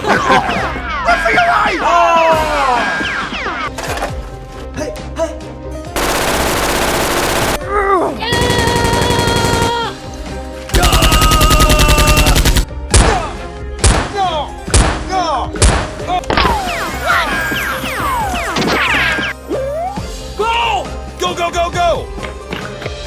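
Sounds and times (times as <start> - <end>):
automatic gunfire: 6.0 - 7.7, 8.3 - 12.6.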